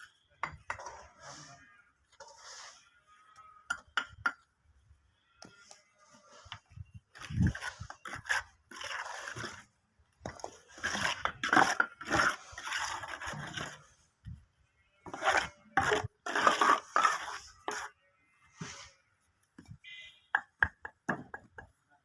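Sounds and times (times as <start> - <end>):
scraping and rubbing: 0.8 - 3.4, 5.7 - 14.0, 15.0 - 19.0.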